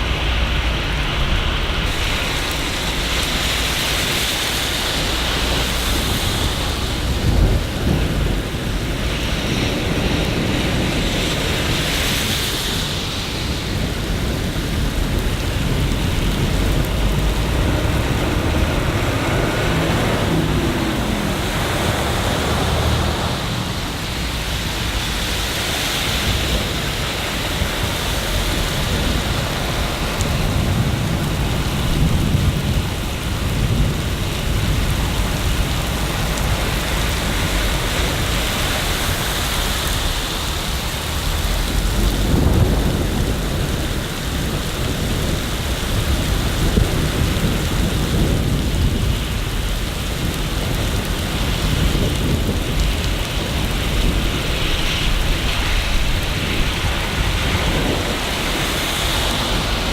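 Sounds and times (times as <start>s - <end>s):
low rumble: 0.0s - 9.0s
rain falling: 0.0s - 59.9s.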